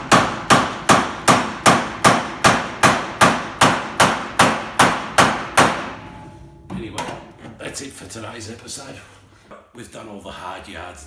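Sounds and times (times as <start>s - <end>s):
hammer striking chisel: 0.0s - 6.0s.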